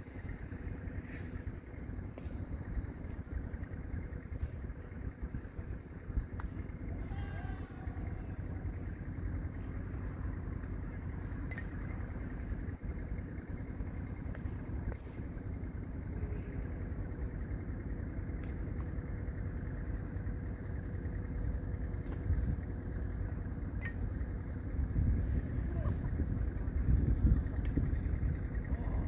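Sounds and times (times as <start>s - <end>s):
strong wind buffeting microphone: 22.2s - 29.0s.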